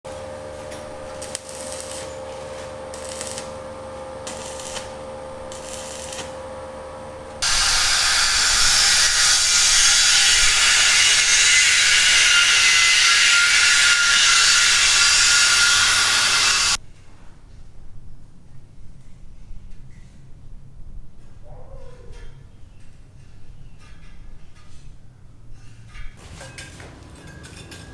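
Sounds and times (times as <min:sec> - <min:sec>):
power tool whining: 0:07.4 - 0:16.8.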